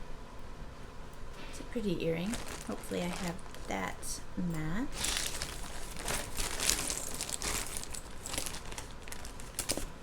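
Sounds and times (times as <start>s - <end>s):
packaging crinkling and rustling: 2.0s - 4.0s, 4.9s - 10.0s.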